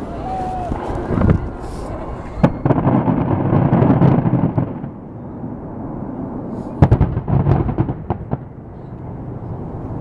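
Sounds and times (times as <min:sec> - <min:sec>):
fireworks bang: 0:00.7 - 0:05.0, 0:06.7 - 0:08.5
firework cracks and pops: 0:02.4 - 0:05.0.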